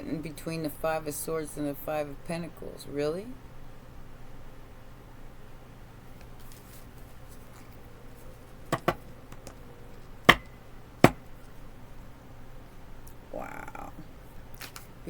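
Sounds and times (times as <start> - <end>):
cards tapping on a table: 8.7 - 9.0.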